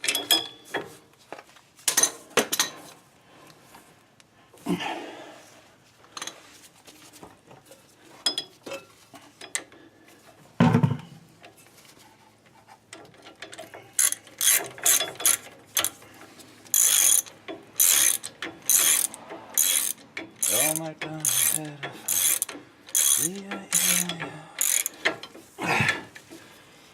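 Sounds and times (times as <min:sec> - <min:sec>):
ratchet wrench clicking: 0:14.0 - 0:16.0, 0:16.7 - 0:25.3.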